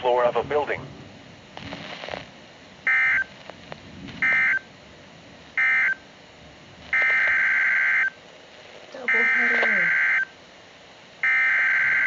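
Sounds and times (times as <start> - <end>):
screeching digital data bursts: 2.9 - 3.4, 4.2 - 4.7, 6.9 - 8.2, 8.9 - 10.4, 11.2 - 12.0.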